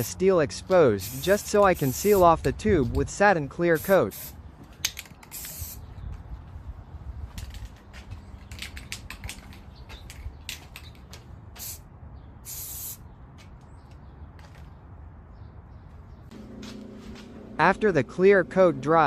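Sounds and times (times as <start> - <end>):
aerosol can spraying: 1.0 - 2.3, 5.3 - 5.8, 12.5 - 13.0.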